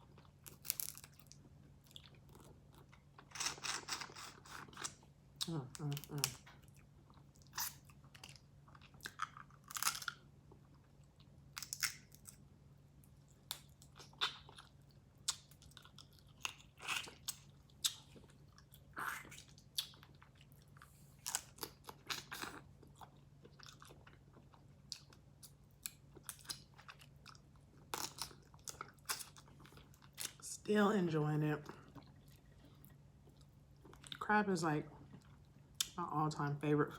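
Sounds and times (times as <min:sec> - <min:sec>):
person chewing: 0:00.0 - 0:10.9, 0:13.4 - 0:30.4, 0:31.8 - 0:34.2
faint low hum: 0:00.0 - 0:36.9
seafood shells cracking: 0:00.4 - 0:01.2, 0:09.1 - 0:10.2.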